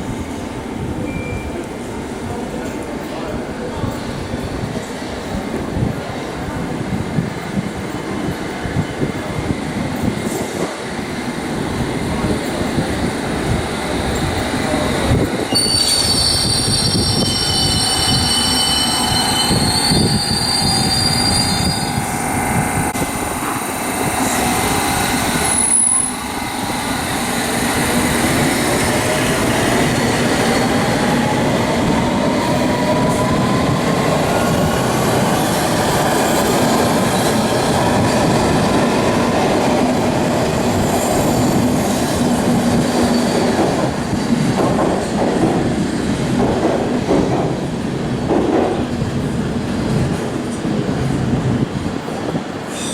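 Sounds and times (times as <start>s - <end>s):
train wheel squeal: 15.4s - 22.6s, 24.2s - 27.0s, 42.8s - 43.7s, 52.7s - 52.9s.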